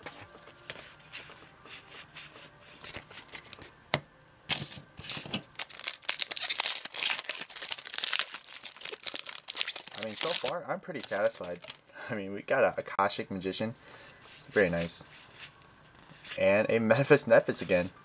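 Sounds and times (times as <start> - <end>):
foil wrapper crinkling: 4.6 - 11.9.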